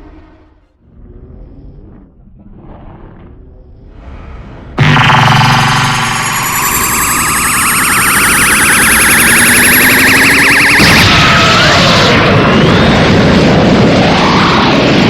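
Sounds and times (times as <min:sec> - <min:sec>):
noisy energy blast: 0:04.8 - 0:11.2
rising warbling charge-up whine: 0:04.8 - 0:11.4.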